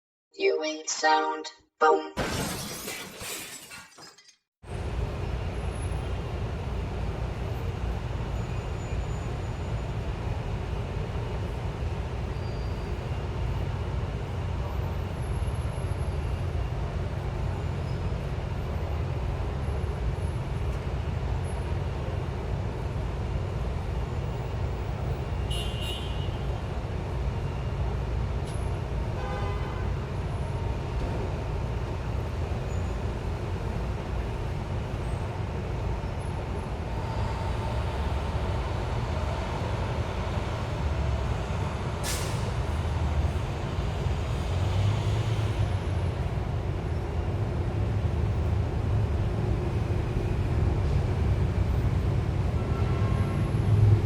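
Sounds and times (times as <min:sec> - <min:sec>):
high-pitched tones: 0:00.4 - 0:02.2
traffic rumble: 0:29.8 - 0:54.0.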